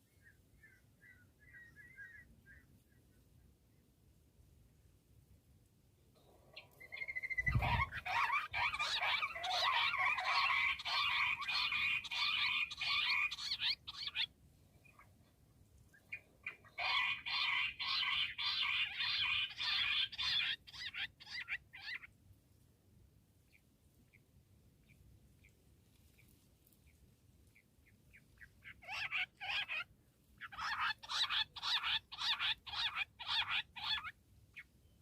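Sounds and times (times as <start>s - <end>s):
quail calling: 0.2s - 2.7s, 6.4s - 14.3s, 16.0s - 22.1s, 28.1s - 34.7s.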